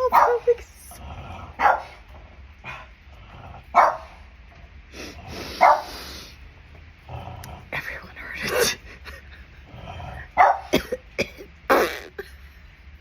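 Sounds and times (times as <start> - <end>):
dog barking: 0.0 - 0.6, 1.6 - 2.0, 3.7 - 4.2, 5.6 - 6.0, 10.4 - 10.8.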